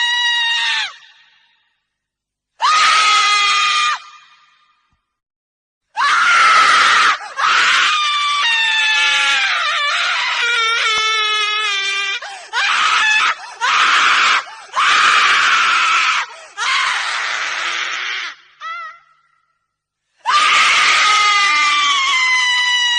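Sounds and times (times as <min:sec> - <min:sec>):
woman screaming: 0:02.6 - 0:04.3, 0:06.0 - 0:19.3, 0:20.3 - 0:22.9.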